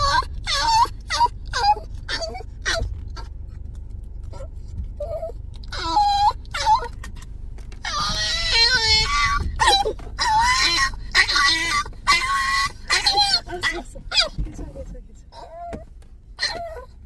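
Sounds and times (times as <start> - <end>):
puppy wailing: 0.0 - 3.5, 4.2 - 14.4, 15.3 - 17.0.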